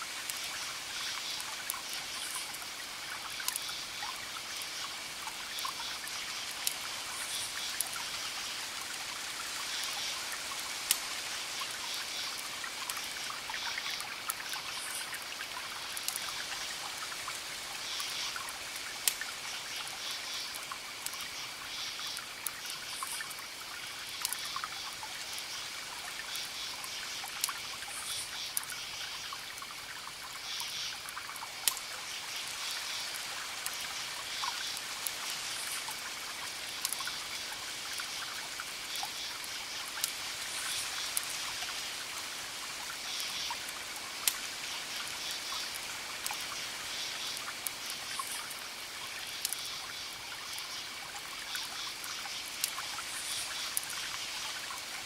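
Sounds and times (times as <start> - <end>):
wood fire crackling: 18.2 - 19.6, 31.6 - 46.4, 47.4 - 49.6, 51.5 - 54.1.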